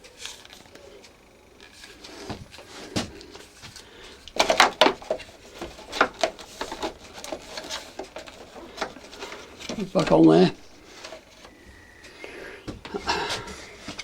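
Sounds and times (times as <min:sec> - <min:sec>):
plastic parts clicking and knocking: 0:04.2 - 0:10.4.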